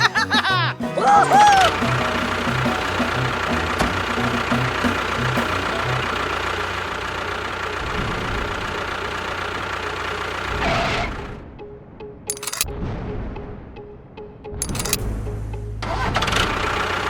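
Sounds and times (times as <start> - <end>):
engine running: 0.8 - 11.4, 14.6 - 17.0.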